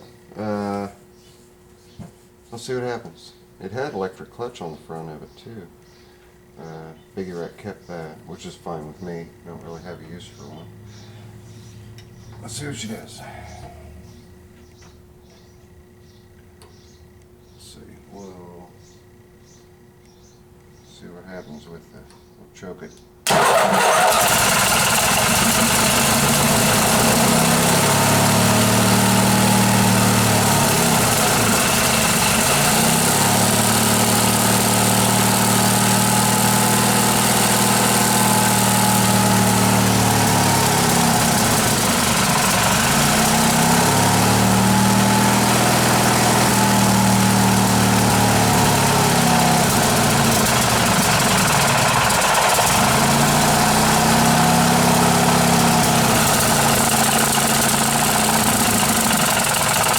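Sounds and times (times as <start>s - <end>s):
engine running unevenly: 23.3s - 59.9s.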